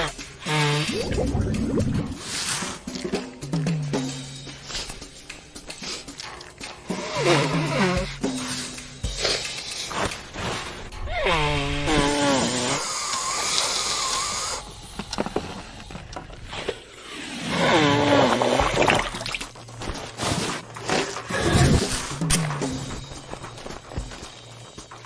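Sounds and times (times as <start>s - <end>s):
hissing noise: 0.8s - 2.8s.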